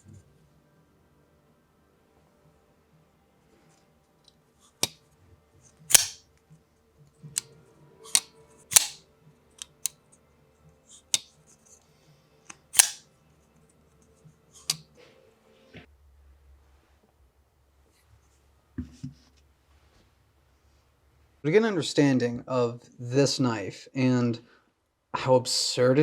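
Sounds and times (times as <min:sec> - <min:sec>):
folding knife clicking open and shut: 0:05.9 - 0:06.2, 0:08.1 - 0:09.0, 0:09.6 - 0:09.9, 0:12.5 - 0:13.0.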